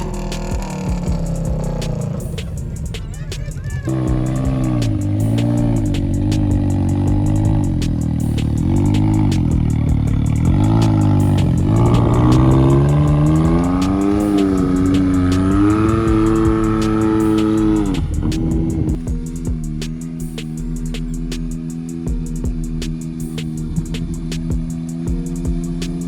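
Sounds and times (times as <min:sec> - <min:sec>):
off-road vehicle engine revving: 0:03.2 - 0:19.0.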